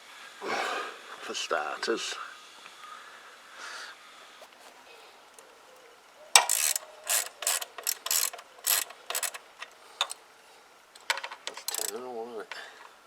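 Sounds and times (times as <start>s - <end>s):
ratchet wrench clicking: 6.4s - 10.2s, 11.0s - 12.0s
ratchet wrench ratcheting: 6.4s - 10.2s, 11.0s - 12.0s.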